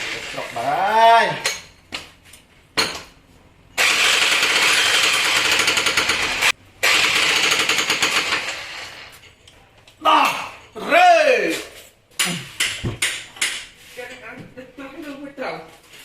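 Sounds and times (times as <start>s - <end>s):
rotary hammer hammering: 12.2s - 13.8s.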